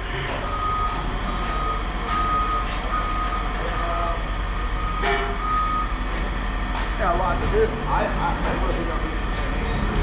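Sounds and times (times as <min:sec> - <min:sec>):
reversing alarm beeping: 0:00.2 - 0:06.1, 0:09.2 - 0:10.0
engine rumbling: 0:07.6 - 0:10.0.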